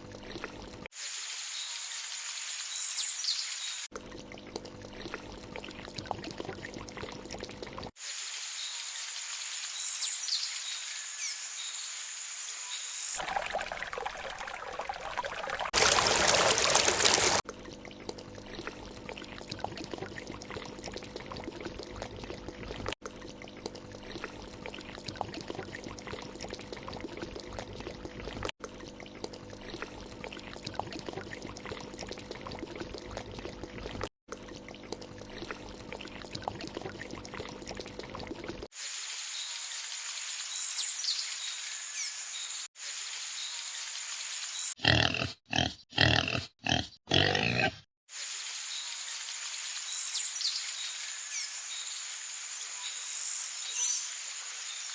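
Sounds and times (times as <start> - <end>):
running water: 13.2 - 17.4.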